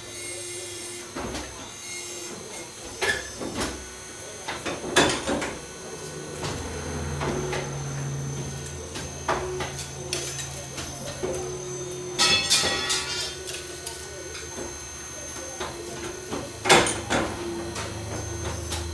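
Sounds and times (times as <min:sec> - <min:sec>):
low machine hum: 0:03.8 - 0:18.9.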